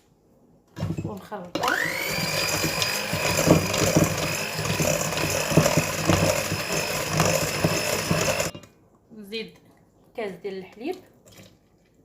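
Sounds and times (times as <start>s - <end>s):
electric mixer whining: 1.5s - 8.5s.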